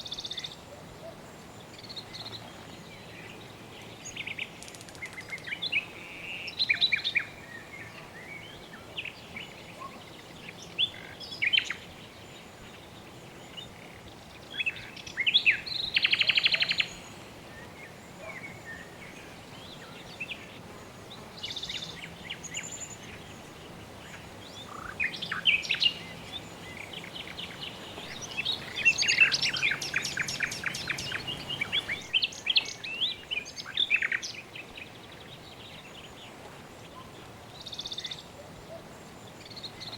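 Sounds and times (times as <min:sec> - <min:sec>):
faint background hiss: 0:00.0 - 0:39.9
birds chirping and calling: 0:24.5 - 0:34.4
bird trill: 0:28.1 - 0:34.2.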